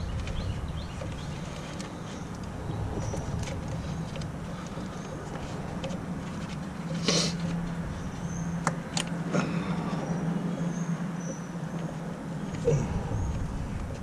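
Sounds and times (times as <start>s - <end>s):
scraping rattle: 0.0s - 9.1s
steady low hum: 0.0s - 14.0s.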